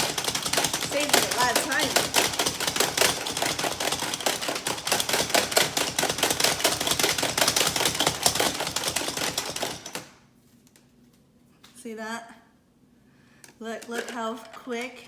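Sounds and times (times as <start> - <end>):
food chopper clattering: 0.0 - 10.2.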